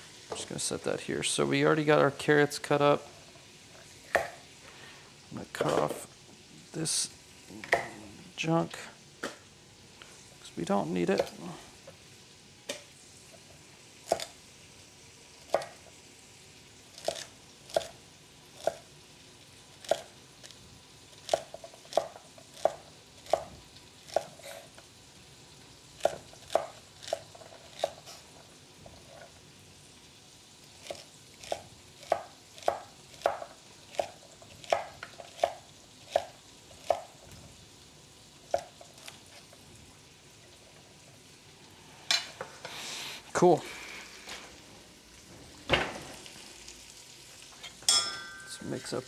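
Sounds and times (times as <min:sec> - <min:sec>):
knife chopping on cutting board: 0:04.1 - 0:04.4, 0:07.6 - 0:08.0, 0:30.8 - 0:37.2
pan sizzling faintly: 0:35.2 - 0:49.0.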